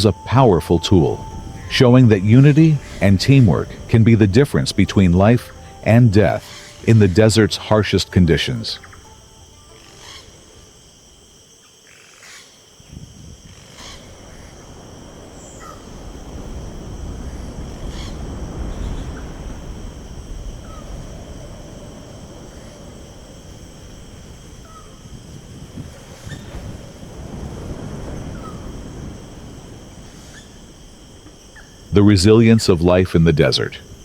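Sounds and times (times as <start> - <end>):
low rushing wind: 0.0 - 34.0.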